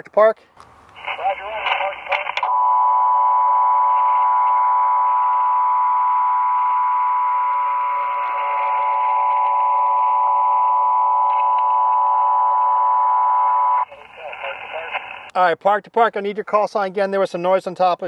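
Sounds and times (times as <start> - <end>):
steady radio whistle: 1.0 - 15.2
radio static hiss: 1.0 - 15.3.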